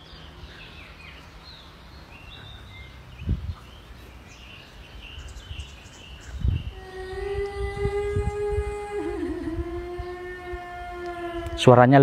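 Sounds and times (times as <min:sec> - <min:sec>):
faint birds chirping: 0:00.0 - 0:12.0
low rumble: 0:06.4 - 0:11.9.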